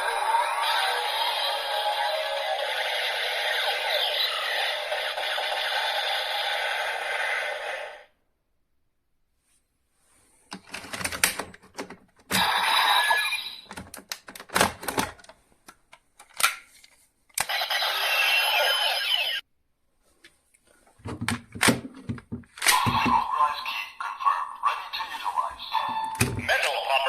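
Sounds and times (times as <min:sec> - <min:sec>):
toy electronic sound effects: 0:00.0 - 0:07.9, 0:12.4 - 0:13.7, 0:17.4 - 0:19.4.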